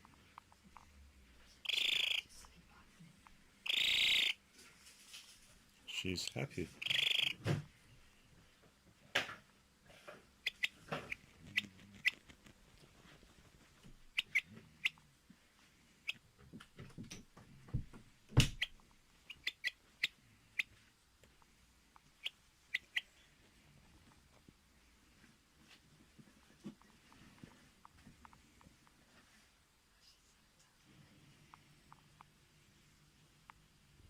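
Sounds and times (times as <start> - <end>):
hen clucking and chirping: 1.6 - 2.3, 3.6 - 4.4, 6.8 - 7.4, 10.4 - 12.2, 14.1 - 15.0, 18.6 - 20.7, 22.0 - 23.2.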